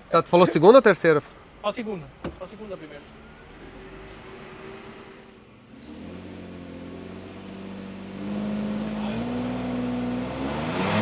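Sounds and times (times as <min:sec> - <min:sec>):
car engine revving on dynamometer: 0:03.4 - 0:11.0.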